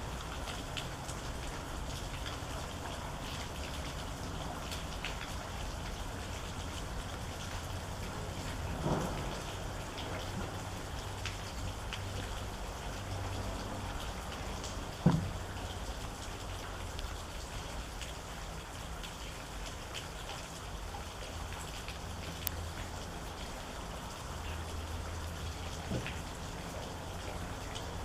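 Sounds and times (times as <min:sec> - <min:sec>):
steady rain: 0:00.0 - 0:28.0.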